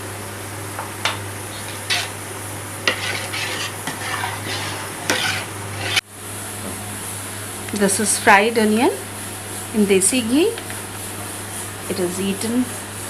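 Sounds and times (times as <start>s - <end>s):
metal spoon scraping a pot: 1.6s - 2.2s, 2.8s - 6.0s.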